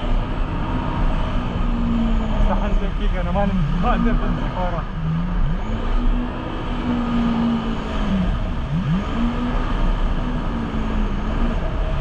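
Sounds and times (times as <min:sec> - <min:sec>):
jet ski engine revving: 0:03.4 - 0:11.8.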